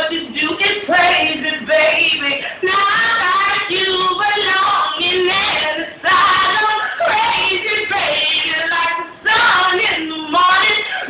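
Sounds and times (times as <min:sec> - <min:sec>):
woman singing high: 0:00.0 - 0:11.0
singer breathing: 0:02.4 - 0:02.7.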